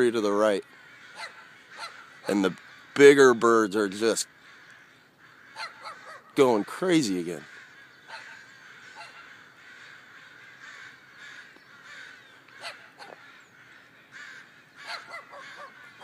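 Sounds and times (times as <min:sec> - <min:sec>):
flock of crows cawing: 0:00.0 - 0:16.0.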